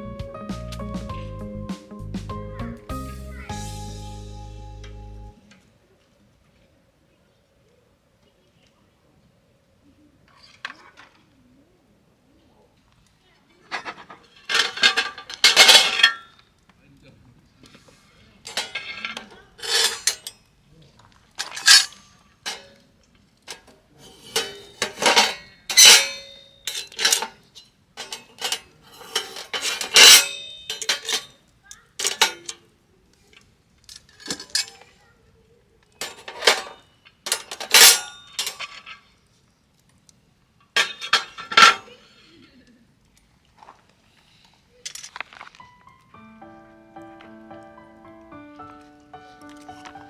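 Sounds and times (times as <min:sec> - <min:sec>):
metal utensils clattering on dishes: 0:13.7 - 0:16.3, 0:18.5 - 0:20.4, 0:21.4 - 0:22.8, 0:23.5 - 0:32.7, 0:34.0 - 0:35.0, 0:36.0 - 0:39.0, 0:40.8 - 0:42.4.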